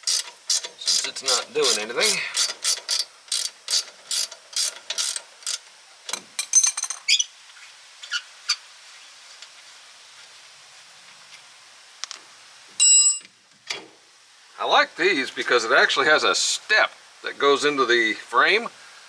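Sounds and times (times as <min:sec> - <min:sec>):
ratchet wrench clicking: 0:00.0 - 0:07.0
metallic clinks: 0:06.4 - 0:07.1, 0:12.8 - 0:13.4.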